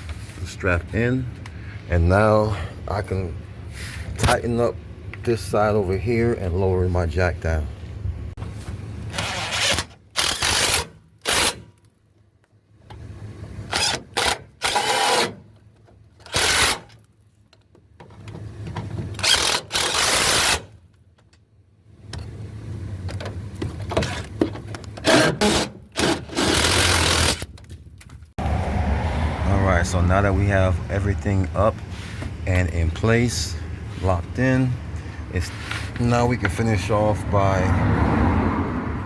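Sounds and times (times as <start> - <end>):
power tool bursts: 9.1 - 11.7, 13.7 - 15.4, 16.3 - 16.9, 19.2 - 20.7, 25.0 - 27.4.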